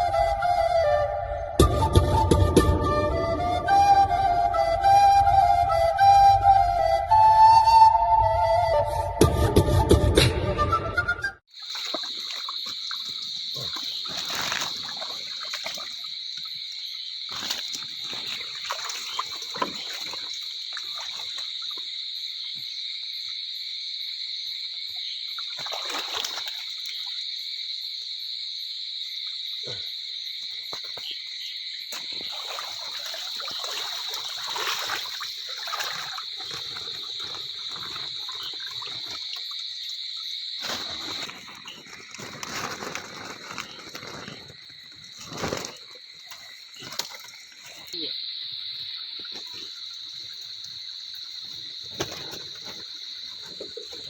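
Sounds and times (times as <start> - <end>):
shallow water trickling: 11.5 - 21.9, 32.2 - 48.0
splashing while wading: 11.5 - 21.9, 25.5 - 27.1, 31.9 - 40.0, 40.6 - 48.0
chorus of night creatures: 11.6 - 54.0.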